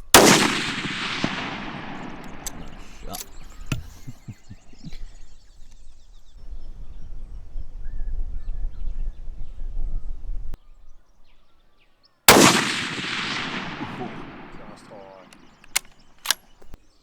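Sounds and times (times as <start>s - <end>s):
rifle shot with echo: 0.0s - 4.0s, 12.3s - 16.8s
faint bird chirps: 2.0s - 12.2s
wind rumble on microphone: 2.3s - 10.6s
click: 15.2s - 16.8s.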